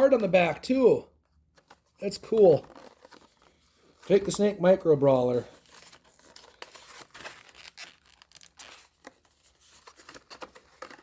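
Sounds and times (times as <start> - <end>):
card packaging tearing and crinkling: 2.3 - 11.0.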